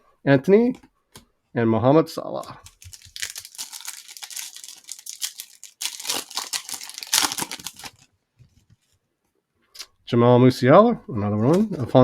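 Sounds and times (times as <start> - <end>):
plastic wrapper crinkling and tearing: 2.6 - 8.1.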